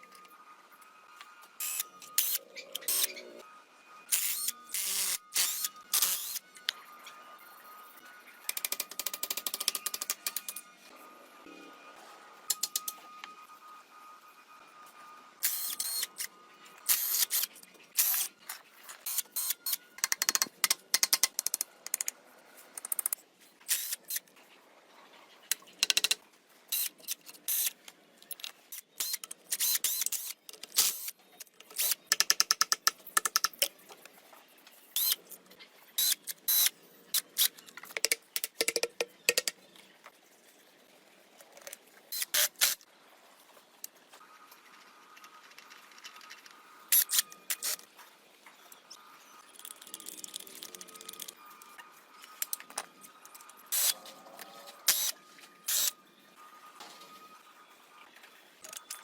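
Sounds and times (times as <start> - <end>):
clicks and taps on hard parts: 37.8 - 39.6.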